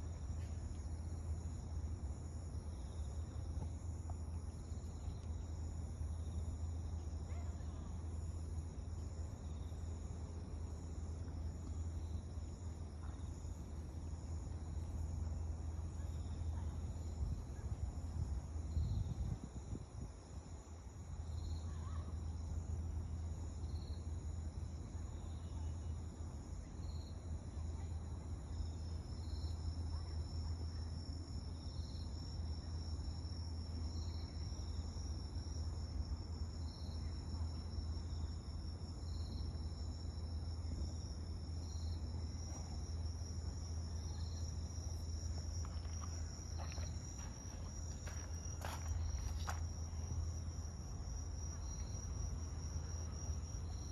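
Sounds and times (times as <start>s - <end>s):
cricket chirping: 0.0s - 53.9s
insect trill: 0.0s - 53.9s.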